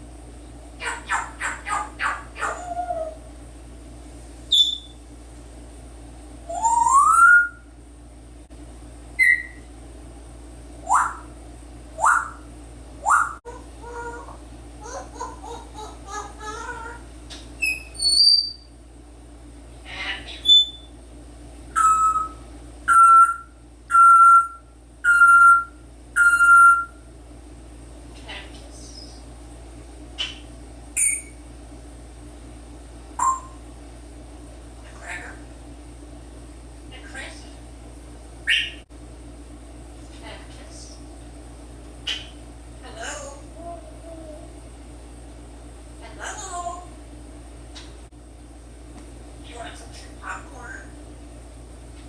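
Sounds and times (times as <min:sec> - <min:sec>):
parrot harsh calls: 0:00.8 - 0:03.2, 0:10.8 - 0:11.3, 0:12.0 - 0:12.4, 0:13.0 - 0:17.0
parrot whistling: 0:04.5 - 0:05.0, 0:06.5 - 0:07.7, 0:09.2 - 0:09.6, 0:10.8 - 0:11.3, 0:12.0 - 0:13.4, 0:17.6 - 0:18.7, 0:20.4 - 0:20.9, 0:21.8 - 0:27.0, 0:31.0 - 0:31.4, 0:33.2 - 0:33.6, 0:38.5 - 0:38.8.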